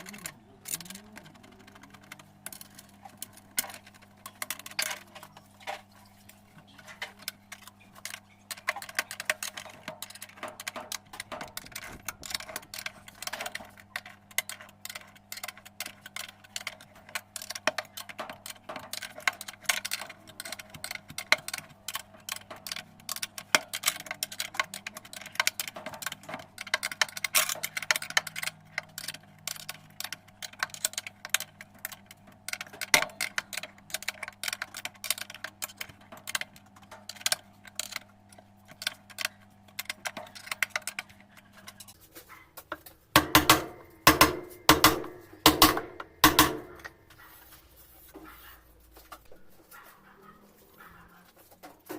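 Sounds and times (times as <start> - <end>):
metal parts and tools clinking: 0.0 - 6.0, 6.7 - 47.0
steady low hum: 0.0 - 51.8.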